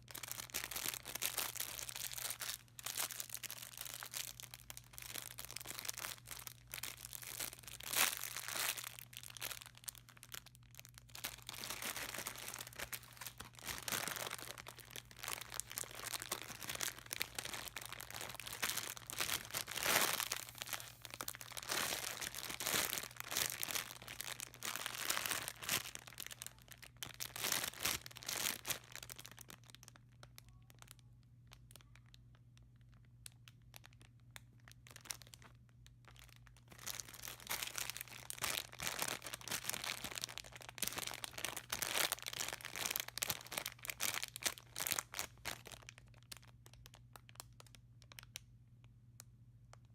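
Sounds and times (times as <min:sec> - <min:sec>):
toy packaging crinkling: 0:00.0 - 0:48.4.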